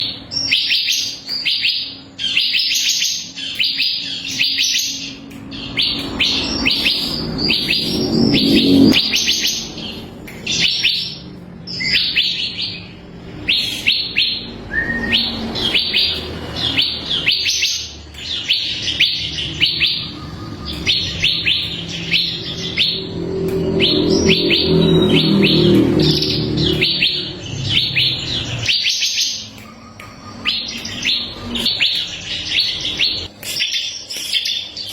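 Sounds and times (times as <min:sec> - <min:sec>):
bird singing sharp chirps: 0:00.0 - 0:34.9
low drone: 0:03.2 - 0:33.3.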